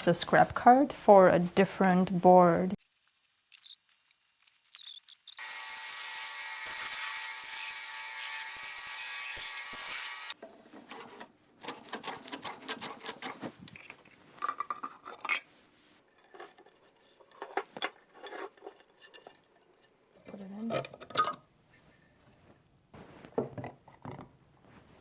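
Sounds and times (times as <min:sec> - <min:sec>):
scraping and rubbing on wood: 0:02.8 - 0:15.4, 0:16.1 - 0:20.0
power tool whining: 0:05.2 - 0:10.4.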